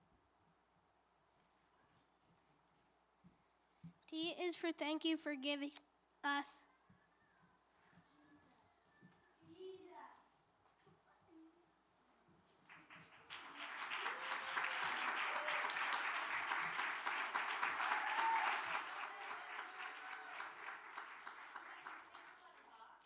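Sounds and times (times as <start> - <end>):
audience clapping: 12.6 - 23.0.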